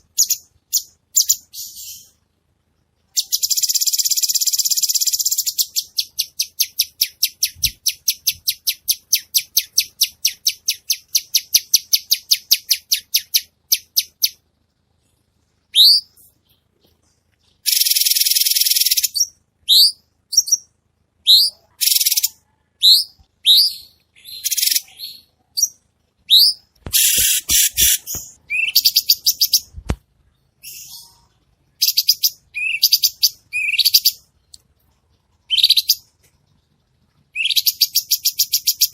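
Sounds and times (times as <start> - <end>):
songbird singing: 0.0 - 2.2, 3.1 - 14.4, 15.7 - 36.6, 37.3 - 38.9
harsh buzzy bursts: 26.9 - 28.3.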